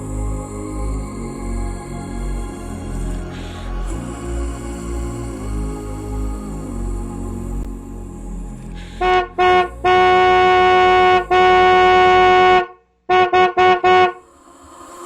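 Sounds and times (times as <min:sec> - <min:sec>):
car horn honking: 0:09.0 - 0:14.2.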